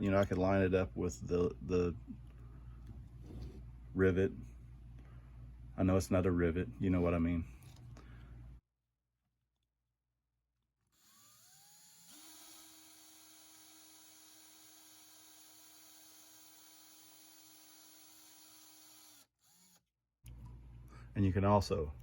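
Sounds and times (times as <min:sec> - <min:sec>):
electric drill whining: 0:11.0 - 0:19.8.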